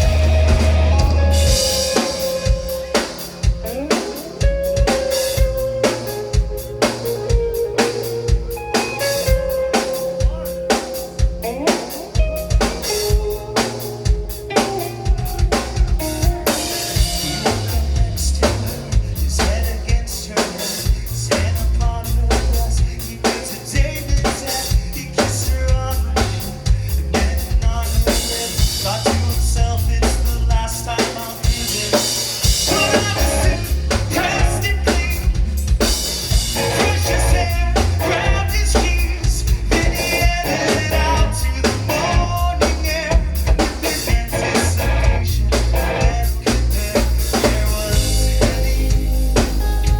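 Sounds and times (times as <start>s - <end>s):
low bass line: 0.0s - 2.6s, 17.2s - 19.8s, 32.7s - 49.9s
rock band playing live: 0.0s - 49.9s.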